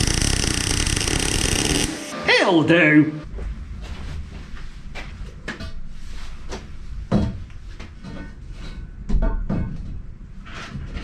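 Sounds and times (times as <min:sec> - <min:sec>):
steady low hum: 0:00.0 - 0:02.2.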